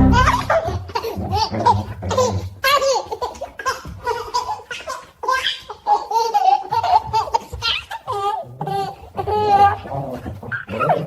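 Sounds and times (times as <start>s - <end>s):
baby laughing: 0.0s - 9.9s.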